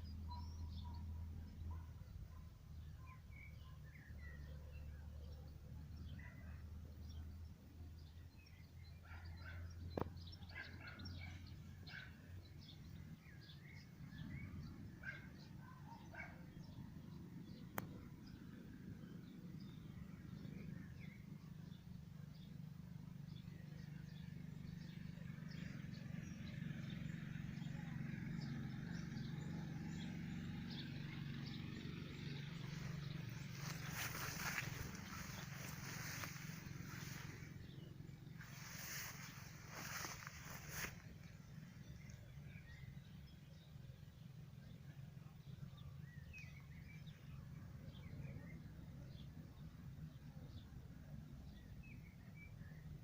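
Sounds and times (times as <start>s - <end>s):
small birds chirping: 0.0s - 53.0s
low hum: 23.0s - 42.5s
birds chirping: 23.2s - 44.7s
rustling: 32.7s - 37.6s, 38.3s - 41.3s.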